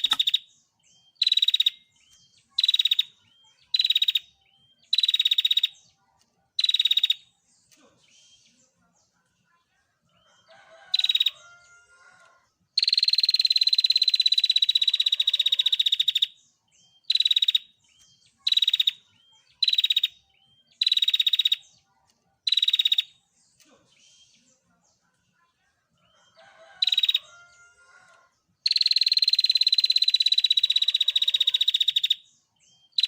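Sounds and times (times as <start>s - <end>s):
bird rattling trill calls: 0.0s - 0.4s.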